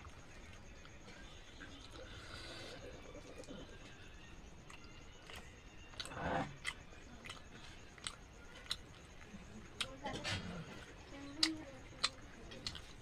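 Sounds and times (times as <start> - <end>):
chewing with mouth clicks: 4.6 - 13.0.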